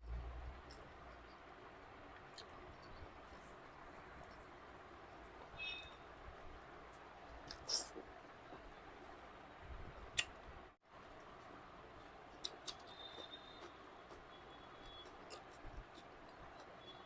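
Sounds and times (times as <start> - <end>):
chewing and eating sounds: 0.5 - 4.6, 12.3 - 17.0.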